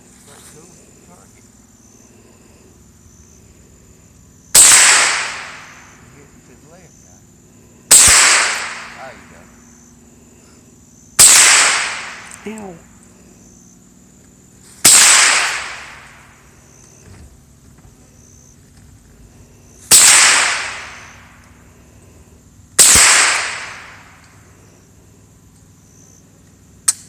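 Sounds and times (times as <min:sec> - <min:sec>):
gunshot echo: 0:04.5 - 0:06.0, 0:07.9 - 0:09.4, 0:11.2 - 0:12.6, 0:14.8 - 0:16.4, 0:19.9 - 0:21.4, 0:22.8 - 0:24.3
rifle shots: 0:04.5 - 0:06.0, 0:07.9 - 0:09.4, 0:11.2 - 0:12.6, 0:14.8 - 0:16.4, 0:19.9 - 0:21.4, 0:22.8 - 0:24.3.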